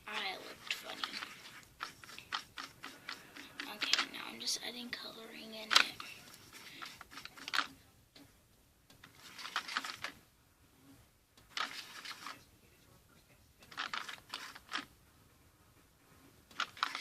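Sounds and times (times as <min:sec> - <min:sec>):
hands rustling and scraping slime: 0:00.0 - 0:07.7.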